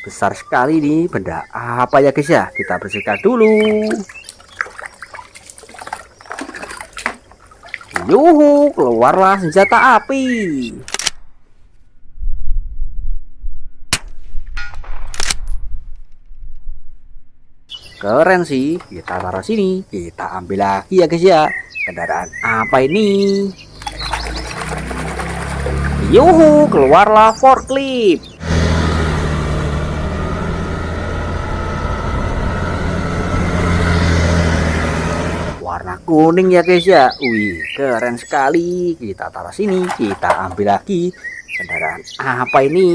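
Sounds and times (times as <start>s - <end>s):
heavy vehicle engine drone: 24.8s - 35.6s.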